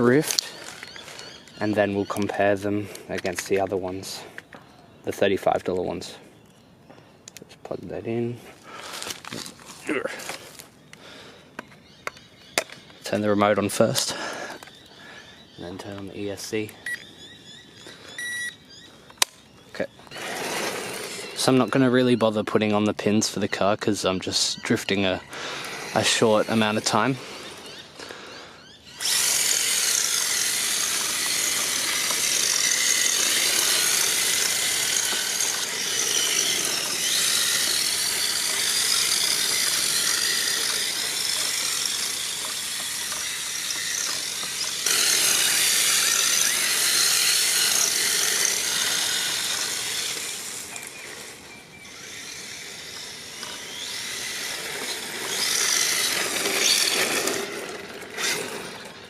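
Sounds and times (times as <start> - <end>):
rc car motor whining: 0.0 - 4.2, 16.5 - 22.4, 23.5 - 59.0.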